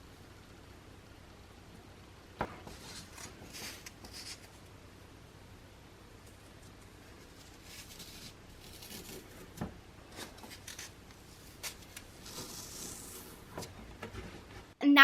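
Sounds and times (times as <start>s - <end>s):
rustling: 2.6s - 4.6s, 6.2s - 14.8s.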